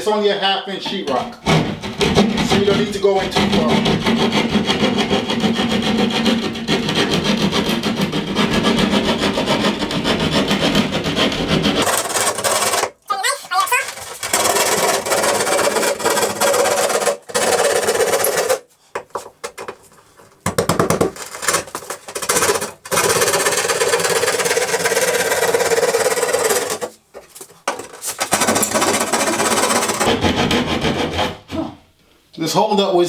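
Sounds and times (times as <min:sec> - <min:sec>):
saw rasping through drywall: 0:01.1 - 0:18.7, 0:20.6 - 0:27.0, 0:27.6 - 0:31.8.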